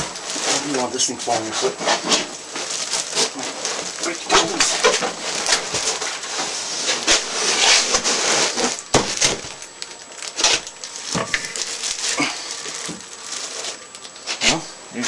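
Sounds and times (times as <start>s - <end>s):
cardboard rustling and scraping: 0.0s - 14.7s.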